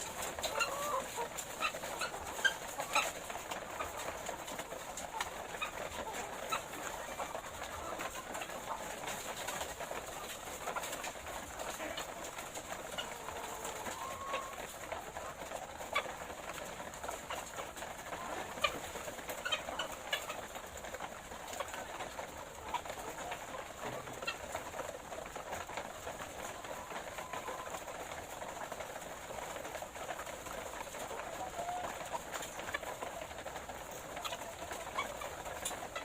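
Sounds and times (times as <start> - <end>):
hens clucking: 0.0 - 36.0.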